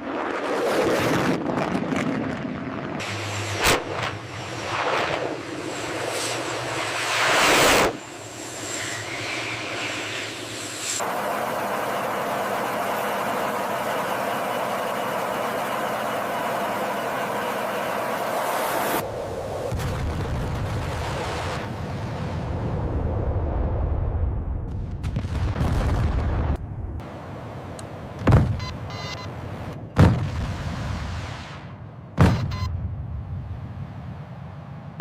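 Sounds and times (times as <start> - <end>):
jet aircraft engine noise: 0.0 - 23.2.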